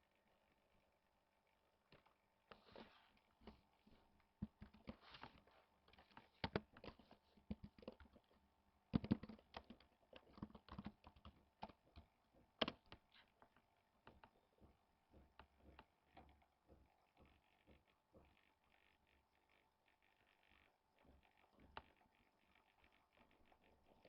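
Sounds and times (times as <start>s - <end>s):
computer keyboard typing: 4.4s - 13.1s.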